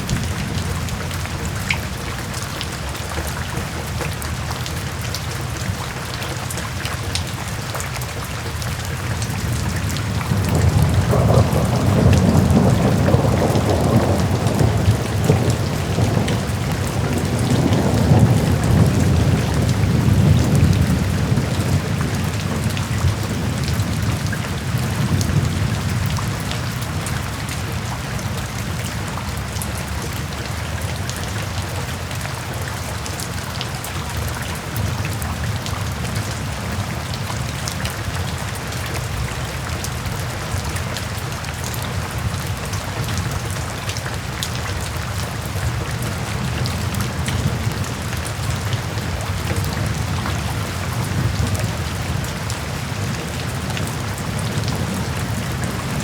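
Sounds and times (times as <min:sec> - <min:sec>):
low rumble of thunder: 0:00.0 - 0:03.9, 0:09.1 - 0:31.4, 0:44.2 - 0:56.0
steady rain: 0:00.0 - 0:56.0.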